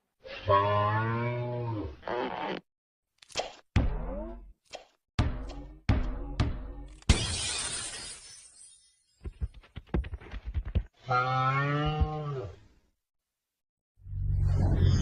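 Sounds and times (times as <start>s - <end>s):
glass crash: 7.0s - 9.2s.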